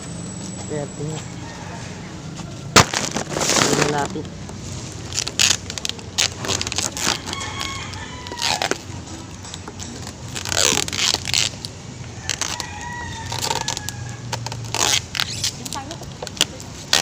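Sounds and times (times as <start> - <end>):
rooster crowing: 1.2 - 2.8, 7.1 - 8.8, 12.2 - 14.4.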